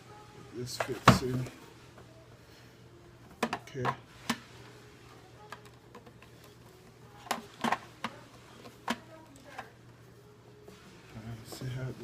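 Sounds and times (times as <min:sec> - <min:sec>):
plastic parts clicking and knocking: 0:03.2 - 0:04.4, 0:05.5 - 0:06.6, 0:07.2 - 0:09.7.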